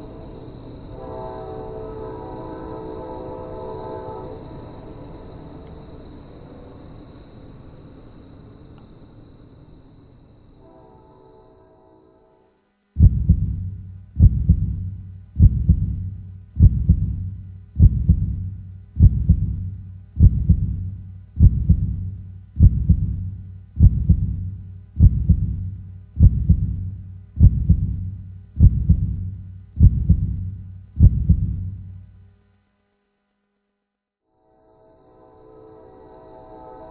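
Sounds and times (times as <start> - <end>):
deep doubled thumps: 13.0 - 32.0.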